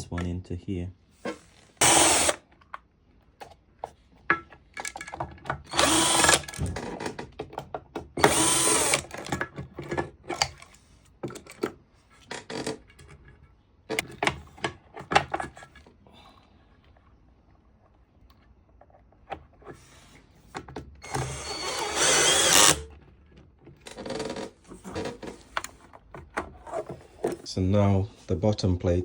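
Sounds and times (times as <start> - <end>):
parts and screws clicking: 1.5 - 2.8, 4.7 - 12.9, 21.0 - 23.0
power drill driving screws: 1.7 - 2.4, 5.7 - 6.9, 8.2 - 9.3, 21.0 - 22.9.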